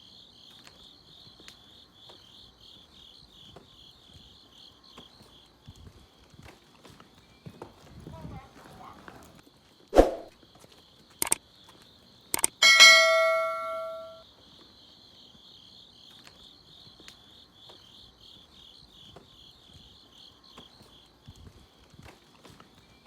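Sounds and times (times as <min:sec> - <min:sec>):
crickets chirping: 0:00.0 - 0:23.0
sharp clicks: 0:11.2 - 0:11.4, 0:12.3 - 0:14.1
metallic bell ding: 0:12.6 - 0:14.2.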